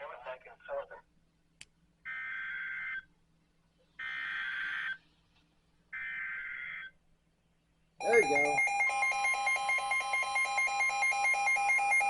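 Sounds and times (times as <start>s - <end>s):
buzzy warbling digital data tones: 8.0s - 8.7s.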